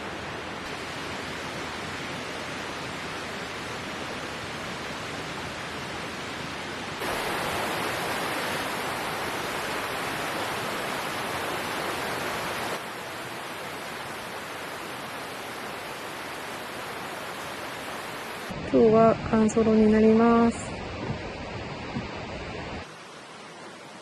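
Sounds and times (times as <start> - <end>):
running water hissing: 7.0 - 18.5.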